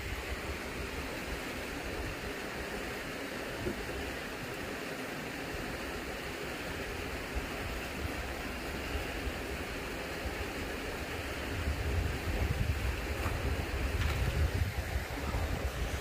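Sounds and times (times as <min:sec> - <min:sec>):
stream water running: 0:00.0 - 0:16.0.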